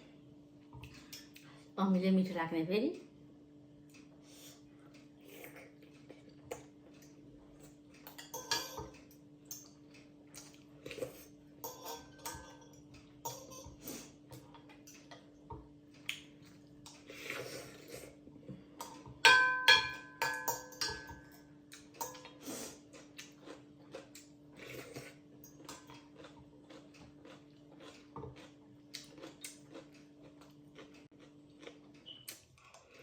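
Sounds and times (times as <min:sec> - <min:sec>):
slurping and eating: 0:16.5 - 0:18.2, 0:22.2 - 0:33.0.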